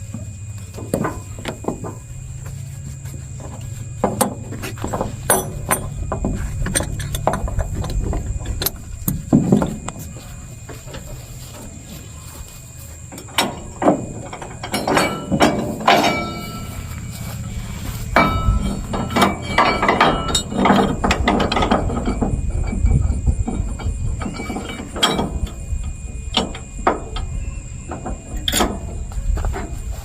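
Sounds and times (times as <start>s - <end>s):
engine running: 0.0s - 30.0s
metallic clicks and clanks: 3.4s - 11.7s, 13.1s - 29.8s.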